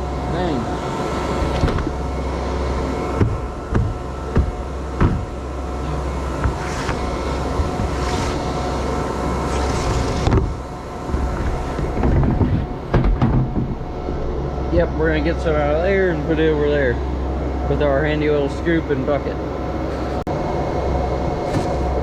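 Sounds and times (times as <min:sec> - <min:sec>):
sharp knocks: 0:03.2 - 0:05.4.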